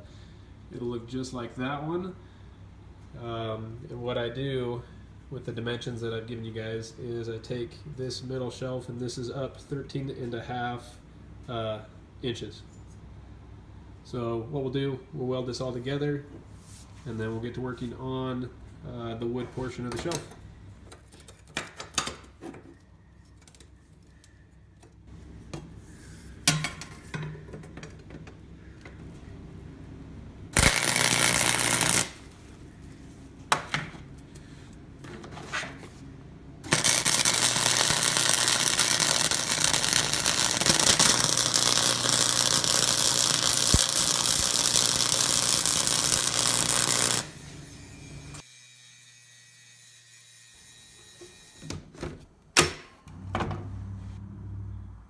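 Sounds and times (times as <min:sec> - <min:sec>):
electric arc welding crackling: 0:30.5 - 0:32.4, 0:36.6 - 0:47.5.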